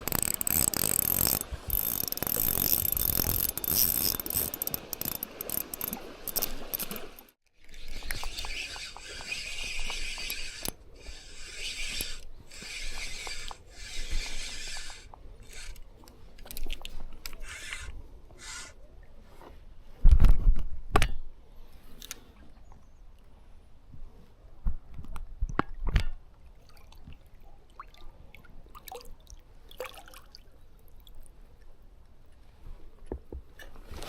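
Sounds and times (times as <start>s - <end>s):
fishing reel ratcheting: 0.0s - 18.8s.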